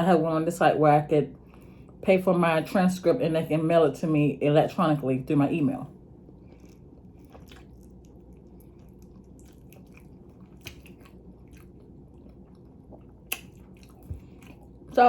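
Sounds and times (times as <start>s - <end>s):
person chewing food: 6.0s - 15.0s.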